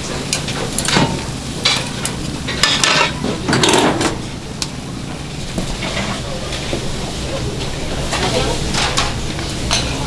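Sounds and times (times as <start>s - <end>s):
utensils clinking and scraping cookware: 0.3s - 4.3s, 8.0s - 10.0s.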